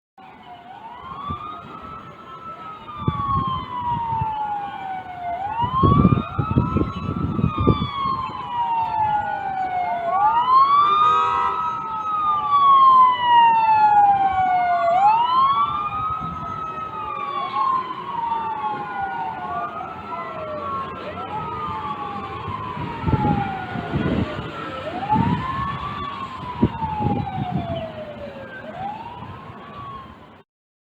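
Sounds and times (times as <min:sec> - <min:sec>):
fire engine sirens wailing: 0:00.2 - 0:30.4.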